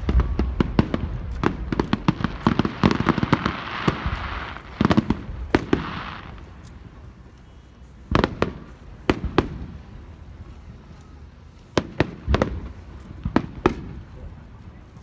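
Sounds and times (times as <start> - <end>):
fireworks bangs: 0.0 - 7.1, 8.1 - 10.1, 11.8 - 14.4.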